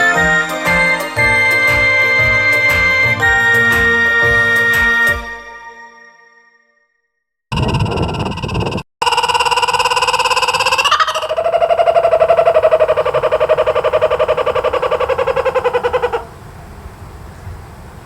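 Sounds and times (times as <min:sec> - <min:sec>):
kookaburra laughing call: 0:09.0 - 0:16.3.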